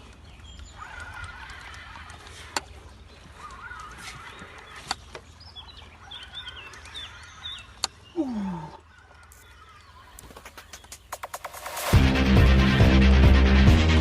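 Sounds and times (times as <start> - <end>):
sharp clicks: 0.0 - 5.4, 6.2 - 12.0
birds chirping: 0.0 - 12.1.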